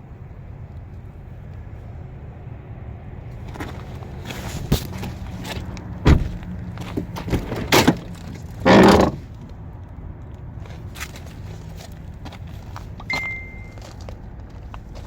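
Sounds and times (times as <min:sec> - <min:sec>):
car door thud: 0:06.0 - 0:06.5
knocks on car interior: 0:06.0 - 0:06.5.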